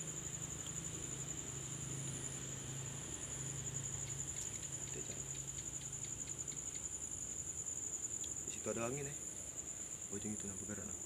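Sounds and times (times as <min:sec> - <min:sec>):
crickets chirring: 0:00.0 - 0:11.0
faint ticks: 0:04.0 - 0:06.9.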